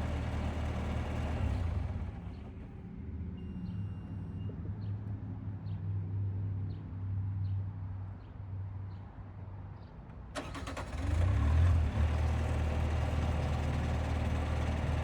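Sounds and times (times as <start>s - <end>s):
diesel engine humming: 0.0s - 2.9s, 10.4s - 15.0s.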